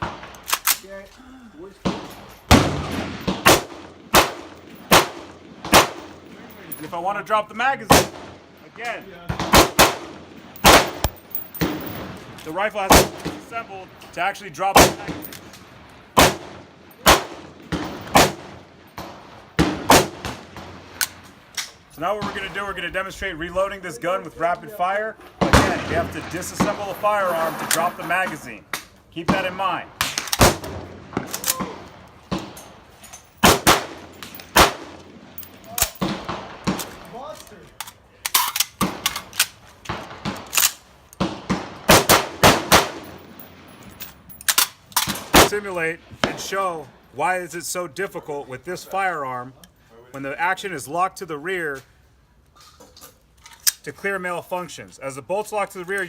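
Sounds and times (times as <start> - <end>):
gunshots: 1.8 - 6.2, 7.9 - 8.4, 9.2 - 12.2, 12.8 - 13.5, 14.7 - 15.4, 16.2 - 21.0, 25.4 - 28.4, 29.2 - 32.6, 33.4 - 37.2, 39.9 - 43.7.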